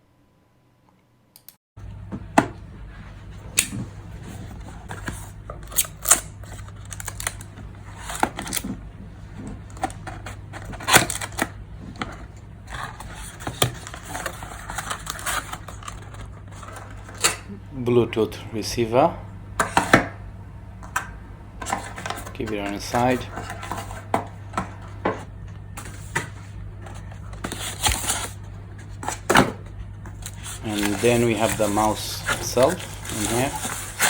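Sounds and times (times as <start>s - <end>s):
steady low hum: 1.8s - 34.0s
packaging rustling: 4.3s - 17.2s, 25.8s - 34.0s
cardboard box being opened: 30.2s - 34.0s.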